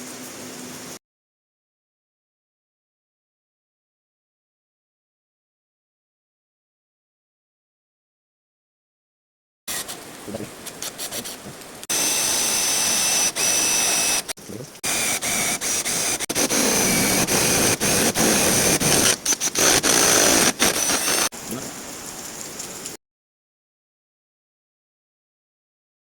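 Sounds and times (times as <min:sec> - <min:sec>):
power drill whining: 0:11.9 - 0:21.3.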